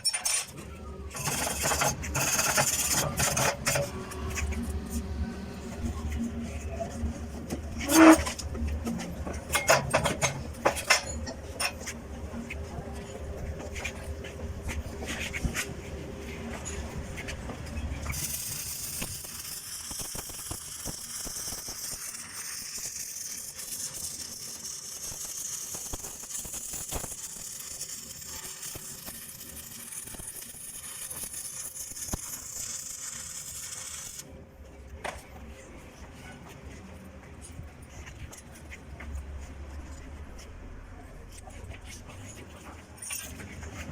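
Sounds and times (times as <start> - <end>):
welding arc crackling and hissing: 1.2 - 6.2, 18.1 - 34.3.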